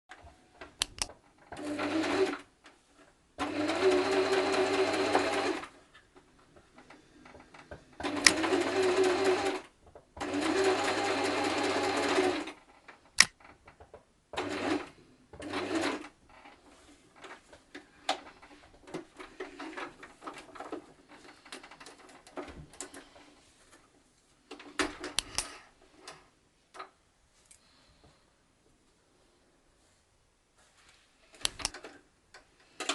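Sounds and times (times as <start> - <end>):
sewing machine stitching: 1.5 - 2.5, 3.4 - 5.8, 7.6 - 12.6, 14.4 - 16.1
sewing machine handling clicks: 8.0 - 8.5.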